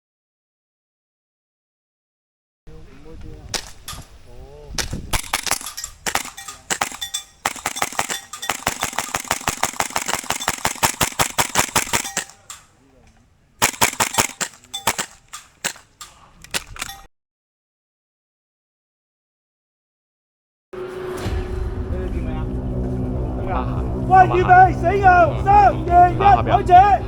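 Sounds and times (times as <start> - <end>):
airsoft rifles firing: 5.1 - 12.8, 13.6 - 17.1.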